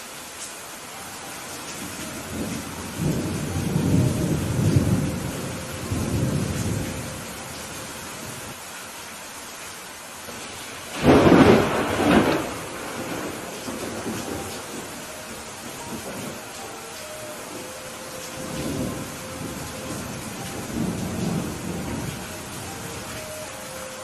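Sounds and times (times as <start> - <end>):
steady rain: 0.0 - 24.0
rolling thunder: 2.1 - 7.3, 10.9 - 16.5, 18.3 - 23.2
thunder clap: 10.9 - 15.0.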